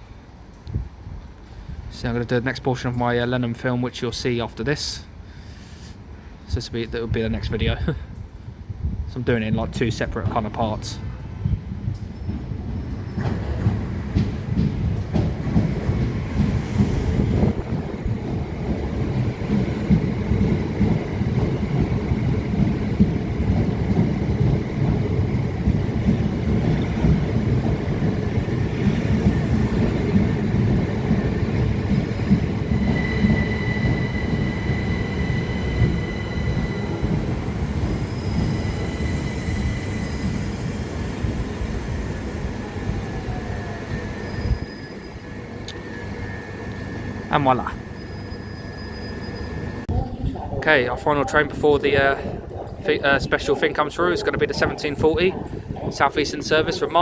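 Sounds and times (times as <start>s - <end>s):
train rumbling on rails: 0.0s - 57.0s
train wheel squeal: 12.0s - 13.7s, 31.4s - 49.9s.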